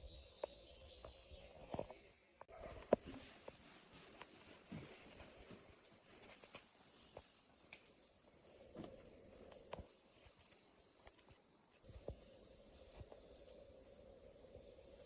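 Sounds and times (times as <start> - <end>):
faint footsteps: 1.8 - 13.6
faint steady hiss: 2.5 - 15.0.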